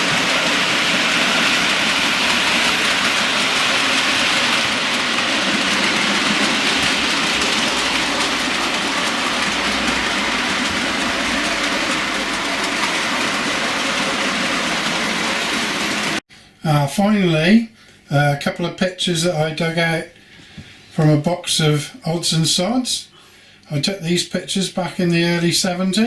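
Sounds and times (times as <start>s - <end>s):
model train running on track: 0.0s - 16.2s, 23.7s - 26.0s.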